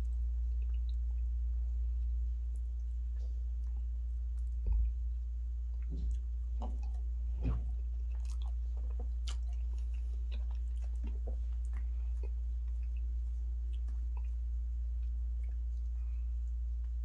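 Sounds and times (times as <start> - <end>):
steady low hum: 0.0 - 17.0
chewing with wet mouth clicks: 0.5 - 1.3, 5.7 - 16.0
soft thumps: 7.4 - 7.8.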